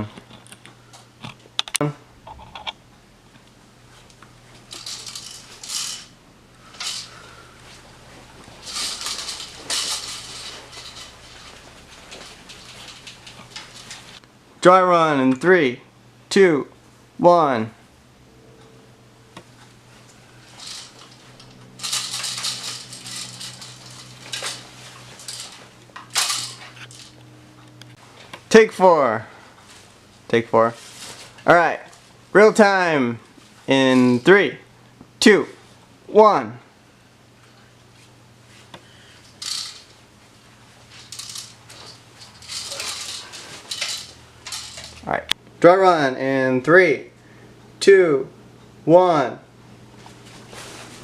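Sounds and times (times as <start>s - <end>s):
steady low hum: 0.0s - 51.0s
rustling: 3.9s - 14.2s, 19.6s - 27.2s, 29.5s - 32.2s, 37.9s - 45.0s, 50.0s - 51.0s
gear rattling and clattering: 4.7s - 6.1s, 6.7s - 7.1s, 8.6s - 14.2s, 20.5s - 27.2s, 39.3s - 40.0s, 40.9s - 45.1s.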